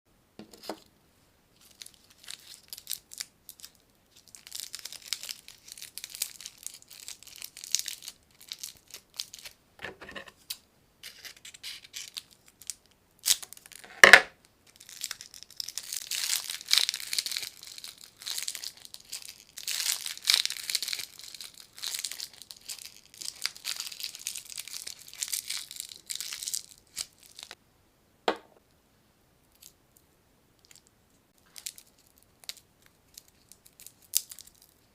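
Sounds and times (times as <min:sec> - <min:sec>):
plastic wrappers crinkling: 0:01.6 - 0:09.6, 0:14.7 - 0:27.6, 0:31.4 - 0:34.9.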